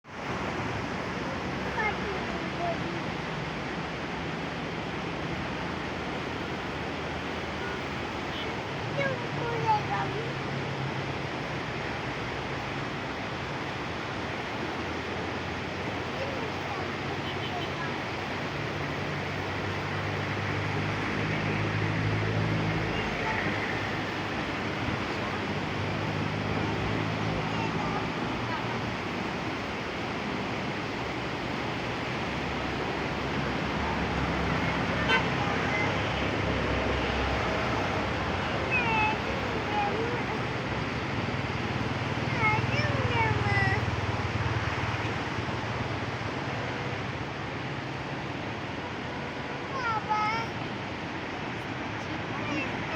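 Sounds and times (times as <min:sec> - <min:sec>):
river water rushing: 0:00.0 - 0:52.9
vehicle engine rumble: 0:15.2 - 0:52.9.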